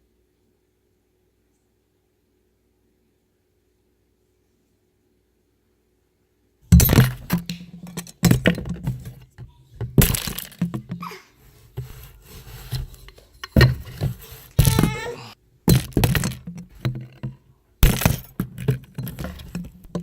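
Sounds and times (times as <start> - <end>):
glass and hard objects smashing: 6.7 - 9.2, 9.9 - 10.9, 15.7 - 17.2, 17.8 - 20.0.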